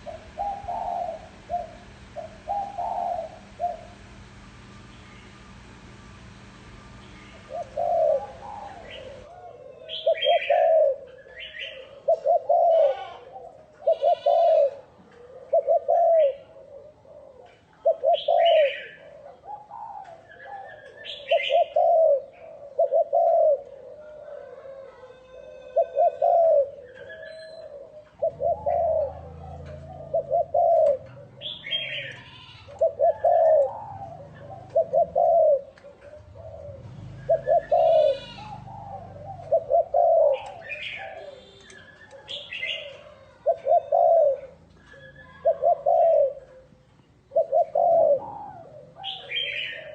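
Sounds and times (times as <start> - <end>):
dove cooing: 0.0 - 4.1, 7.1 - 49.9
high bird chirps: 26.9 - 27.7.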